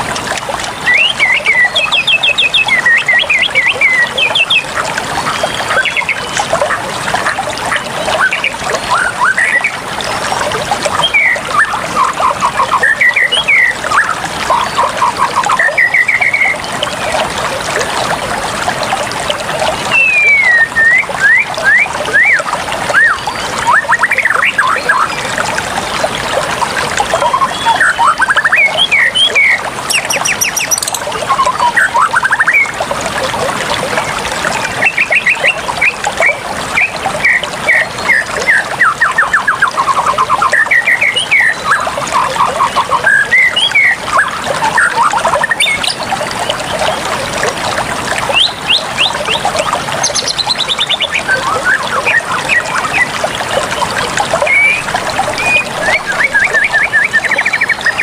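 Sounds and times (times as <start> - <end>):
water trickling and pouring: 0.0 - 58.0
birds chirping and trilling: 11.0 - 17.1, 19.8 - 25.2, 27.1 - 32.7, 48.3 - 49.4, 50.0 - 58.0.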